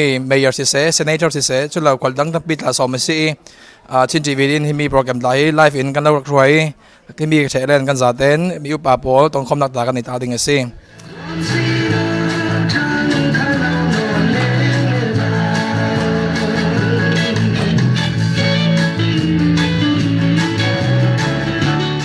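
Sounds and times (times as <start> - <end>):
instrumental guitar music: 11.0 - 22.0.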